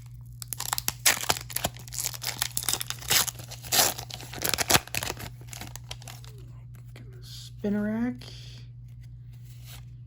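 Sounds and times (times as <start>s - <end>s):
wrapper tearing and crinkling: 0.0s - 6.3s
steady low hum: 0.0s - 10.0s.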